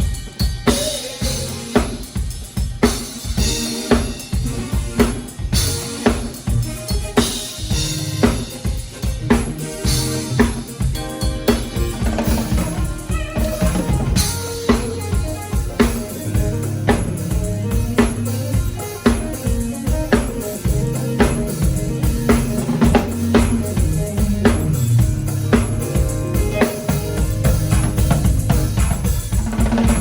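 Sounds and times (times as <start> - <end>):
drum kit beat: 0.0 - 30.0
low bass line: 9.2 - 11.1, 12.0 - 29.2.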